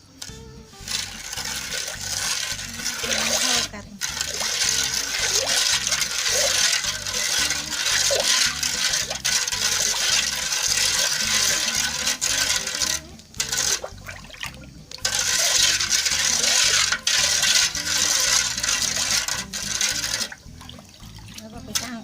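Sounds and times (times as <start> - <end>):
liquid stirred in a pot: 0.1 - 22.0.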